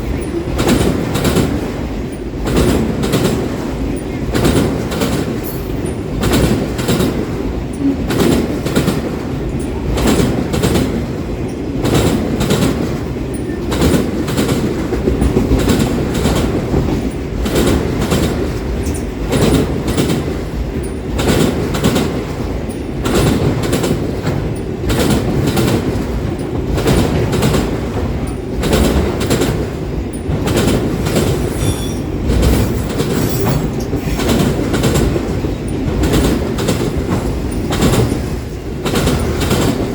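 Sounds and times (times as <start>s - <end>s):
train cars rumbling past: 0.0s - 39.9s
wheels clacking over rail joints: 0.0s - 39.9s
high wheel squeal: 31.4s - 34.2s.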